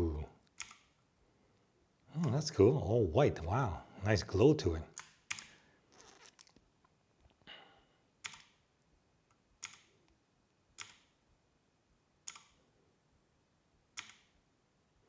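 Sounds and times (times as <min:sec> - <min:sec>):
clicky keyboard key presses: 0:08.2 - 0:08.6, 0:10.8 - 0:11.1, 0:14.0 - 0:14.3.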